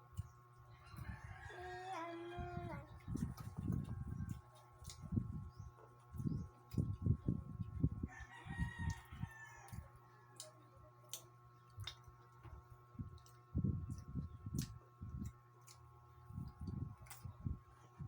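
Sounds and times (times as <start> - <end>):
chewing and crunching food: 0.0 - 18.0
rooster crowing: 0.8 - 2.8, 8.1 - 10.4.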